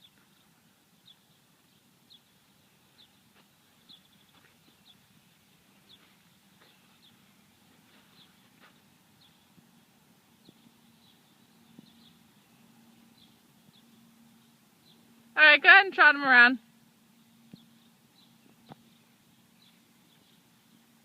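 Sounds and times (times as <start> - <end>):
bird chirping faintly: 0.0 - 15.3.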